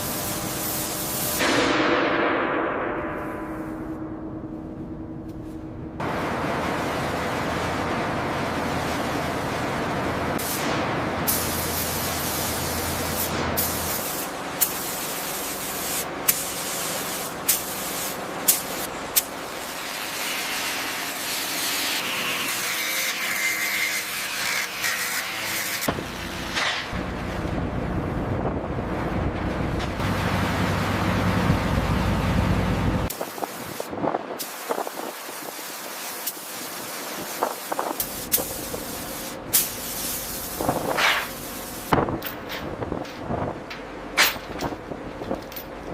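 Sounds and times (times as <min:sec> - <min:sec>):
loud spraying hiss: 0:10.4 - 0:20.3, 0:33.1 - 0:41.9.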